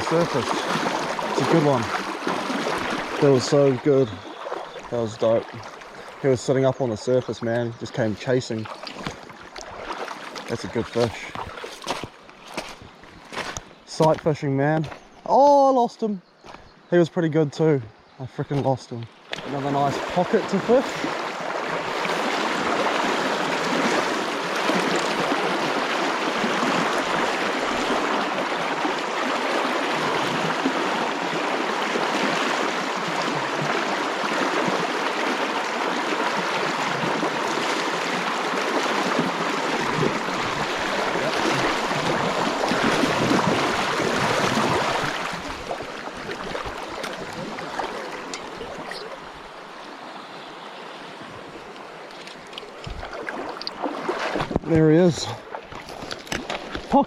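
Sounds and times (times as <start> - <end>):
river water rushing over rocks: 0.0 - 5.0, 19.4 - 57.0.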